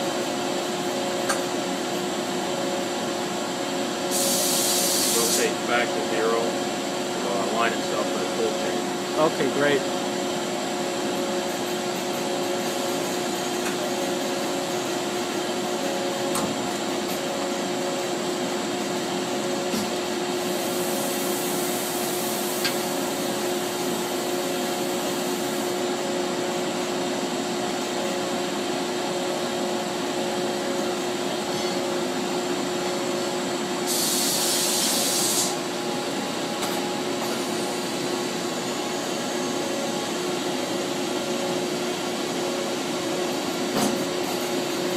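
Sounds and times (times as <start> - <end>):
machine whirring hum: 0.0 - 44.9
hiss: 4.1 - 5.6, 20.4 - 22.8, 33.8 - 35.6.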